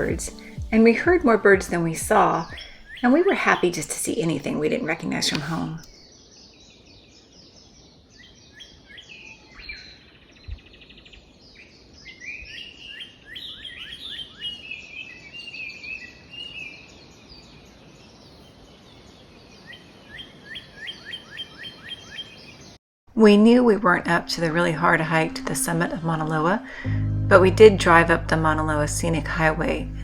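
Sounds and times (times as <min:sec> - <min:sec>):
songbirds singing: 0:00.0 - 0:22.8.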